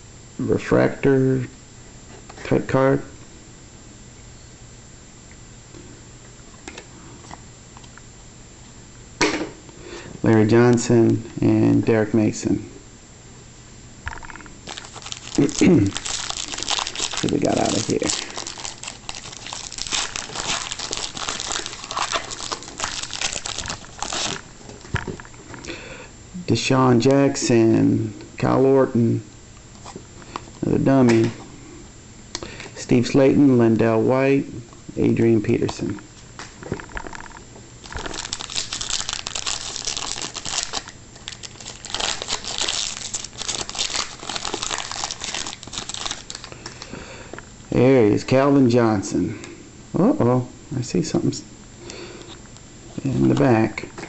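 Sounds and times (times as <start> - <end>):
foil wrapper crinkling: 14.6 - 24.9, 37.8 - 46.9.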